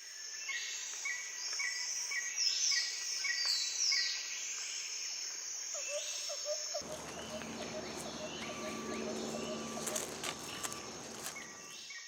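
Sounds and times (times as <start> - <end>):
falling whistled bird calls: 6.8 - 11.8
high insect drone: 6.8 - 11.8.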